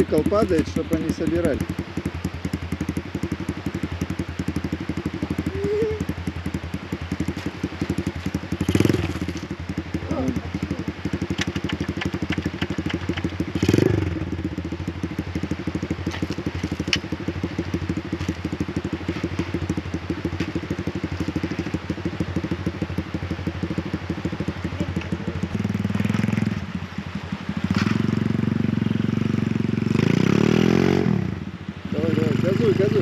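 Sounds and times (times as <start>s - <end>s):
motorcycle engine idling: 0.0s - 33.0s.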